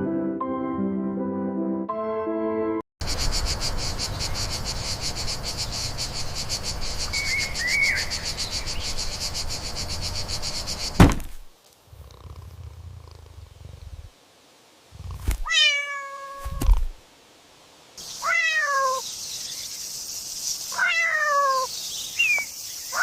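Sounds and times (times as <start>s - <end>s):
sharp thump: 10.9s - 11.5s, 16.4s - 17.0s
faint low rumble: 11.8s - 14.2s.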